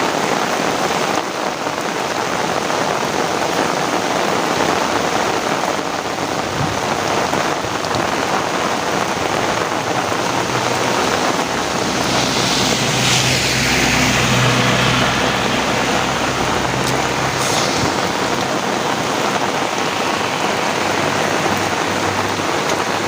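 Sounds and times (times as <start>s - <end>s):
heavy rain pouring: 0.0s - 23.0s.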